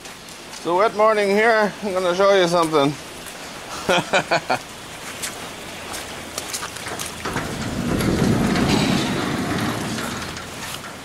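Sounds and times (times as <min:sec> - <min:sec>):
light rain hiss: 0:00.0 - 0:11.0
low rumble: 0:07.2 - 0:11.0.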